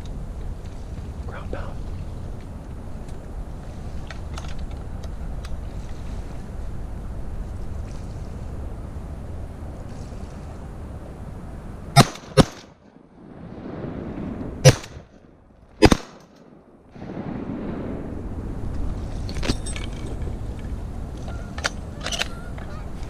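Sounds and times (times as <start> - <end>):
wind noise: 0.0 - 23.0
shotgun shots: 12.0 - 12.8, 14.6 - 15.1, 15.8 - 16.4.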